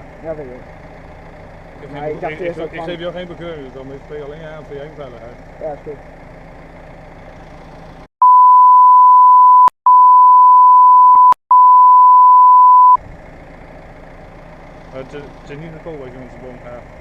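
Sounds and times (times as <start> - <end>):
engine idling: 0.0 - 8.1, 13.0 - 17.0
censor bleep: 8.2 - 13.0.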